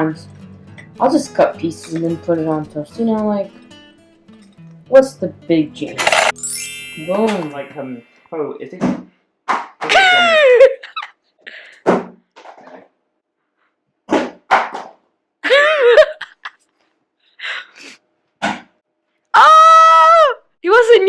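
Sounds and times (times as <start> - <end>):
laughter: 9.9 - 11.6, 15.4 - 16.8.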